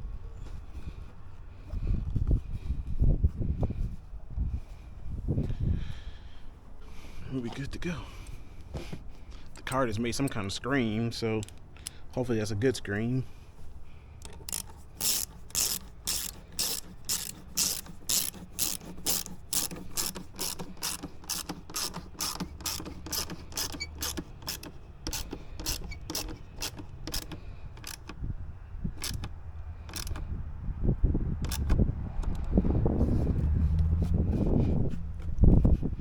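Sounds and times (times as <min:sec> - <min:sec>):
tool handling: 0:13.6 - 0:28.3, 0:28.9 - 0:30.4
ratchet wrench clicking: 0:14.2 - 0:28.2, 0:29.0 - 0:30.3, 0:31.4 - 0:32.6.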